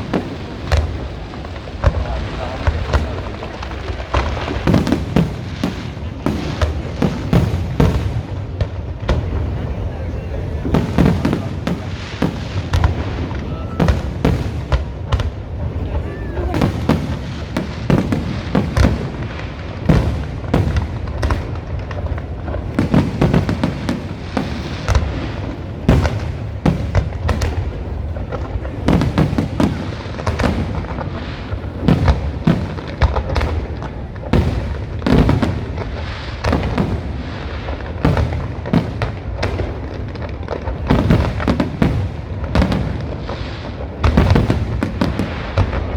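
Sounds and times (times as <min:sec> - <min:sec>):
fireworks bangs: 0:00.0 - 0:45.9.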